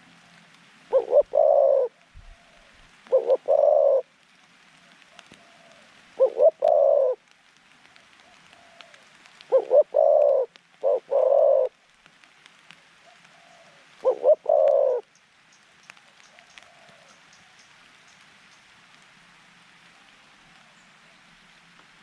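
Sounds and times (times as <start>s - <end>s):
dove cooing: 0.9s - 4.1s, 4.8s - 7.2s, 8.2s - 11.8s, 13.0s - 15.1s, 16.3s - 17.2s.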